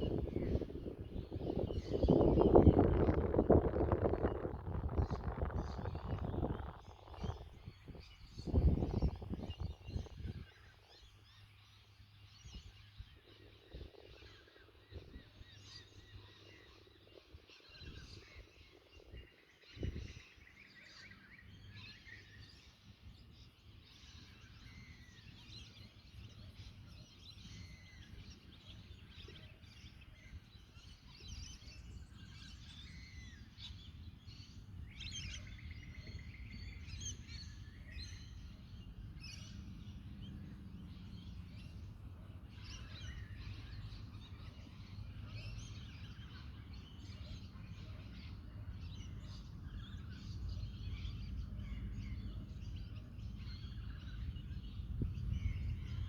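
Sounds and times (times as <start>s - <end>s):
low wind rumble: 0.0s - 20.3s, 25.8s - 56.0s
small birds chirping: 0.0s - 56.0s.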